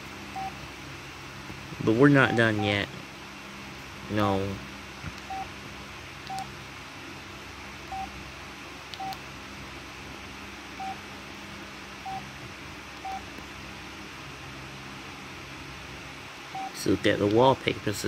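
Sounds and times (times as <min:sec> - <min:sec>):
phone keypad beeps: 0:05.3 - 0:05.5, 0:06.3 - 0:06.5, 0:07.9 - 0:08.1, 0:09.0 - 0:09.2, 0:10.8 - 0:11.0, 0:13.0 - 0:13.2, 0:16.6 - 0:16.8.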